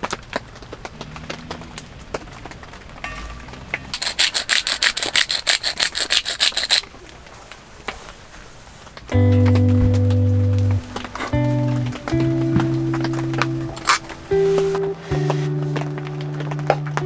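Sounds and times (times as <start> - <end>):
hand saw cutting wood: 3.9 - 6.8.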